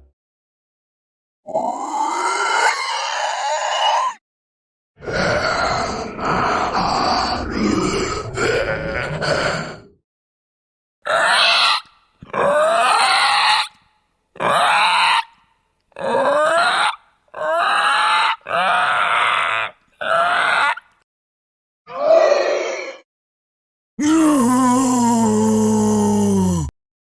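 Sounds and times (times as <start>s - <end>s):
guttural zombie grunts and growls: 1.5s - 4.2s, 5.0s - 10.0s, 12.2s - 13.1s, 15.9s - 20.8s, 21.9s - 23.0s, 24.0s - 26.8s.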